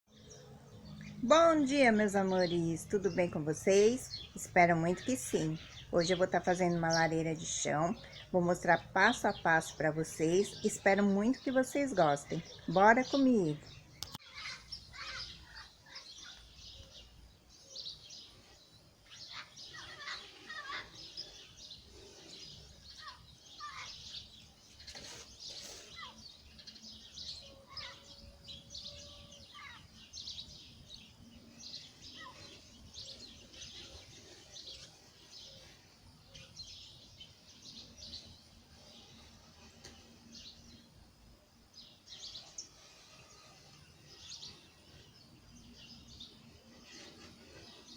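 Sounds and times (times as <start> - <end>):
birds chirping and calling: 0.1 - 47.9
faint outdoor ambience: 0.1 - 47.9.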